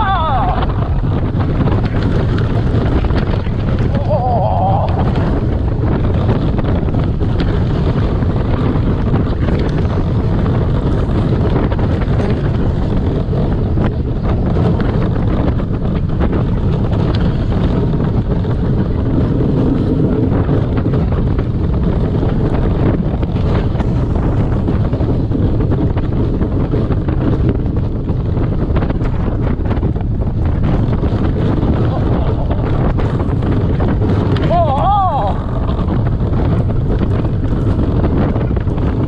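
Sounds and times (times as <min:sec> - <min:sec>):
roller coaster train rumble: 0:00.0 - 0:39.0
wind buffeting microphone: 0:00.0 - 0:39.0.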